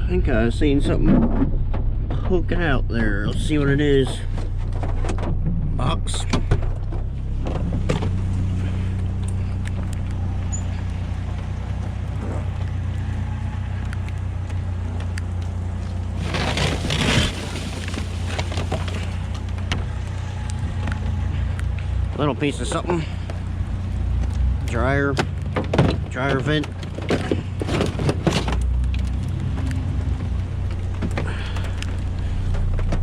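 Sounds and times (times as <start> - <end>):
vehicle engine humming: 0.0 - 33.0
rustling handling noise: 9.6 - 22.1.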